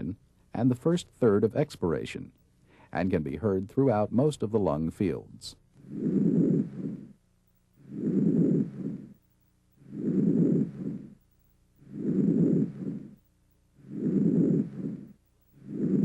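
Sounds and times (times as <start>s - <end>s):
breath sounds through stethoscope: 2.6s - 3.0s, 5.8s - 7.2s, 7.8s - 9.2s, 9.8s - 11.2s, 11.8s - 13.2s, 13.8s - 16.0s.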